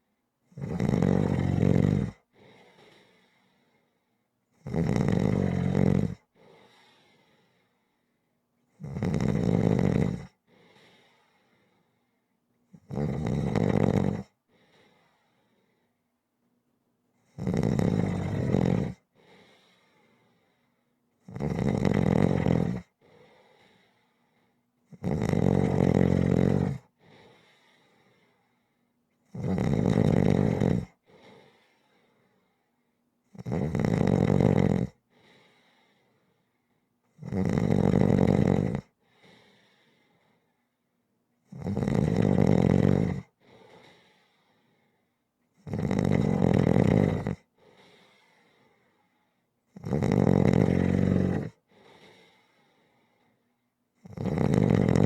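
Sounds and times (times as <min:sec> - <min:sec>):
person snoring: 0:00.6 - 0:02.2, 0:04.6 - 0:06.3, 0:08.8 - 0:10.4, 0:12.8 - 0:14.3, 0:17.3 - 0:19.0, 0:21.3 - 0:22.9, 0:24.9 - 0:26.9, 0:29.3 - 0:31.6, 0:33.4 - 0:35.0, 0:37.2 - 0:38.9, 0:41.5 - 0:43.3, 0:45.6 - 0:48.1, 0:49.8 - 0:52.4, 0:54.0 - 0:55.0
soft breath: 0:02.2 - 0:04.2, 0:06.2 - 0:08.3, 0:10.4 - 0:12.3, 0:14.4 - 0:16.1, 0:19.1 - 0:21.0, 0:23.0 - 0:24.7, 0:26.9 - 0:29.0, 0:31.0 - 0:33.0, 0:35.1 - 0:36.9, 0:38.9 - 0:40.8, 0:43.3 - 0:45.2, 0:47.4 - 0:49.5, 0:51.6 - 0:53.7.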